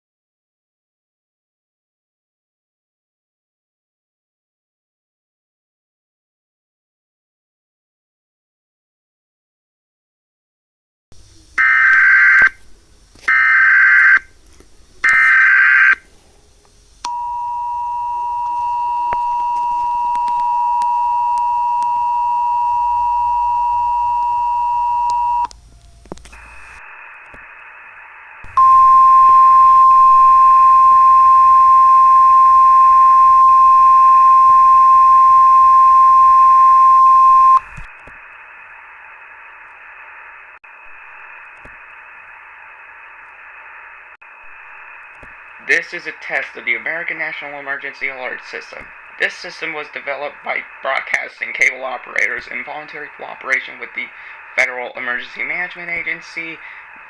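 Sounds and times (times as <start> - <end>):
harsh data bursts: 11.5 - 14.4, 15.0 - 16.1, 17.0 - 57.0
two-tone attention signal: 17.1 - 25.5, 28.5 - 37.7
loud steady alert tone: 28.4 - 37.8.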